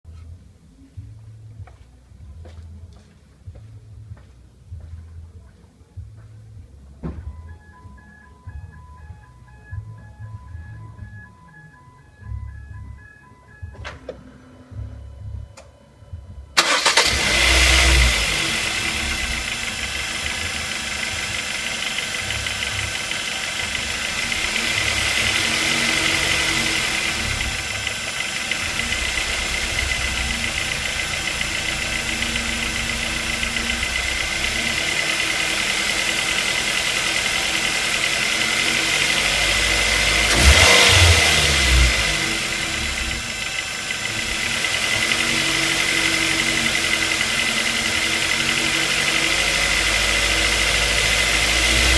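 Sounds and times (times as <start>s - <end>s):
car engine cranking and starting: 16.6s - 51.9s
engine idling with knock: 16.7s - 51.9s.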